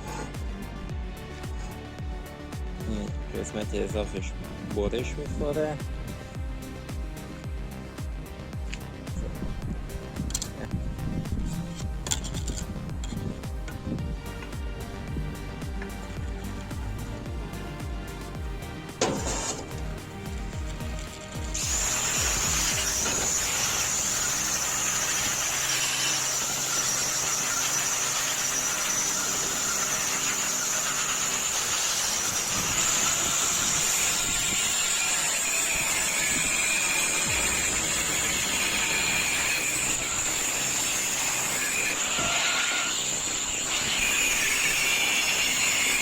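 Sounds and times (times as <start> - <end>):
angle grinder cutting steel: 10.0 - 46.0.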